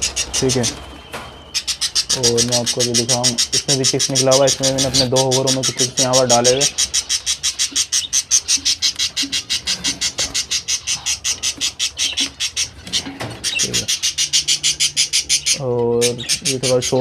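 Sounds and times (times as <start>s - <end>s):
small bird chirping rapidly: 0.0s - 17.0s.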